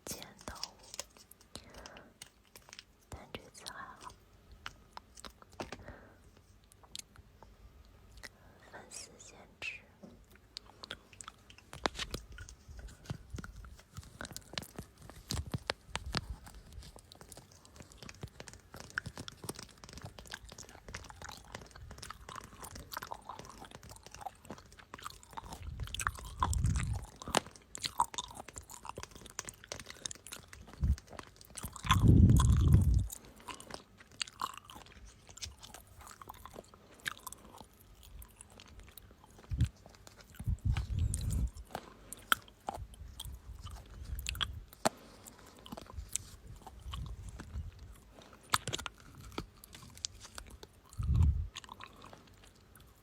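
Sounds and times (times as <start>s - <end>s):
small crunching clicks and crackles: 0.0s - 53.0s.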